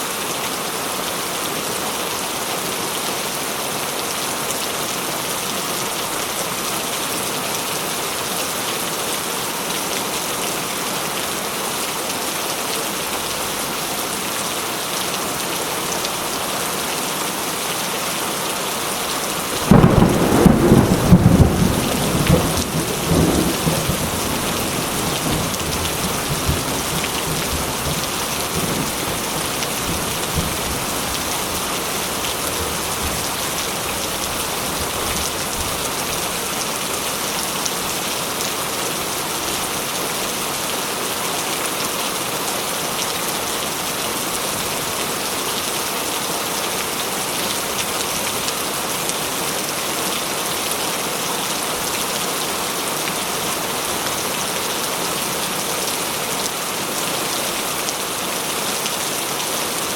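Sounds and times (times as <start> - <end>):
steady rain: 0.0 - 59.9
thunder clap rumbling: 19.6 - 32.2.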